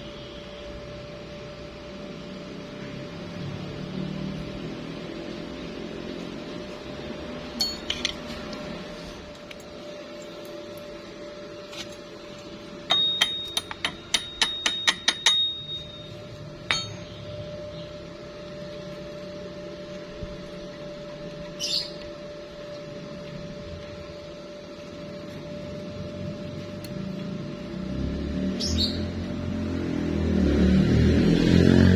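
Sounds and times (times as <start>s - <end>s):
steady hum: 0.0s - 31.4s
metal struck ringing: 12.9s - 17.3s.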